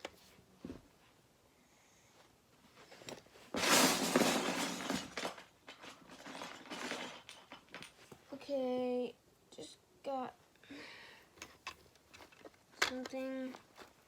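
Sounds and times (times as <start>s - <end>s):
plastic bricks rattling: 3.6s - 8.1s.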